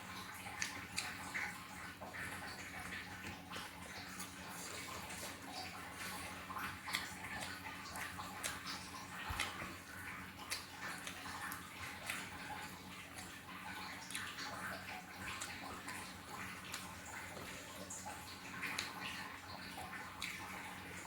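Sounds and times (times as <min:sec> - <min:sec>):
wet chewing: 0:00.1 - 0:21.0
mouth smacks and clicks: 0:06.9 - 0:09.7.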